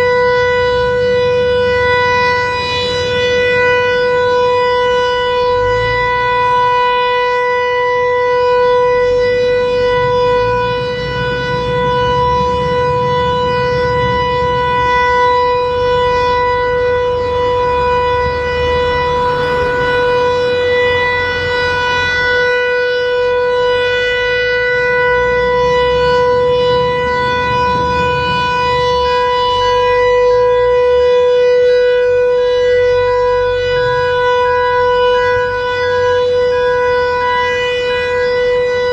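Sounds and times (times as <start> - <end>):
mechanical siren steady tone: 0.0 - 38.9.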